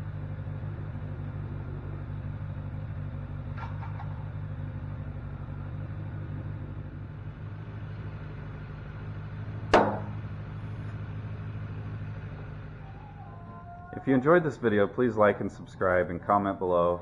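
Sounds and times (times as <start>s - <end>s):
sharp knock: 9.8s - 10.2s.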